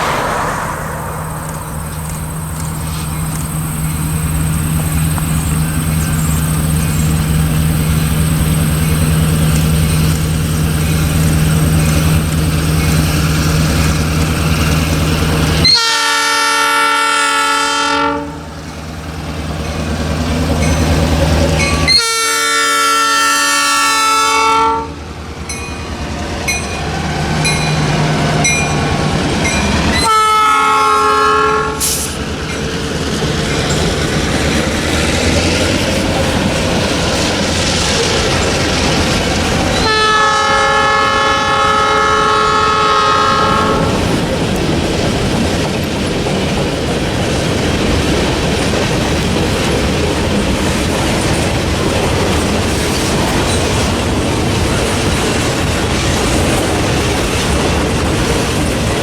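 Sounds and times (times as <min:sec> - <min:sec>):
train rumble and clickety-clack: 0:00.0 - 0:59.0
locomotive air horn blasts: 0:15.6 - 0:18.4, 0:21.8 - 0:25.0, 0:30.0 - 0:32.2, 0:39.8 - 0:44.1.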